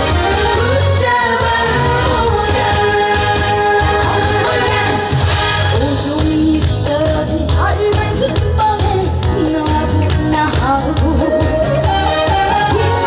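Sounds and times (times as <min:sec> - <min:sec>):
band playing a steady beat: 0:00.0 - 0:13.0
woman singing: 0:05.7 - 0:13.0.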